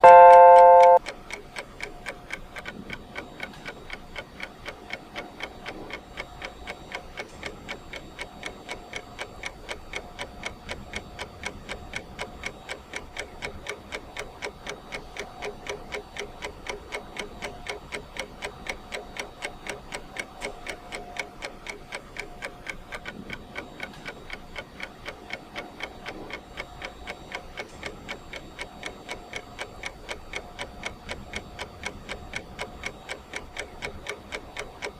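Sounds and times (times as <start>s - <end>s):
short beep: 0.0s - 1.0s
clock ticking: 0.0s - 34.9s.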